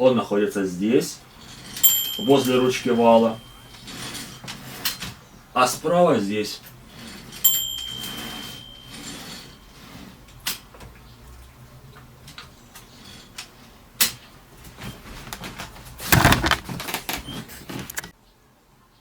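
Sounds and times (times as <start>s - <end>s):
typewriter carriage sliding rattle: 1.4s - 5.1s, 15.4s - 18.1s.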